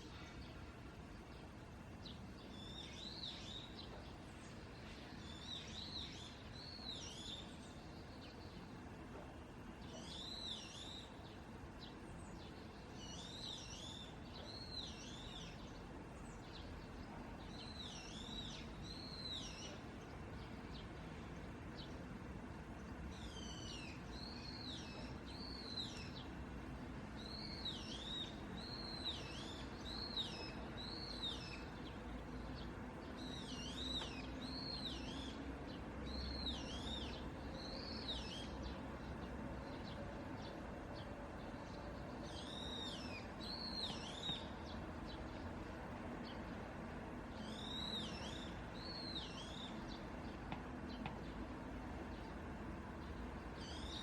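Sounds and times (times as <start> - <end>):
small birds chirping: 9.7 - 26.6, 27.2 - 46.7, 47.3 - 54.0.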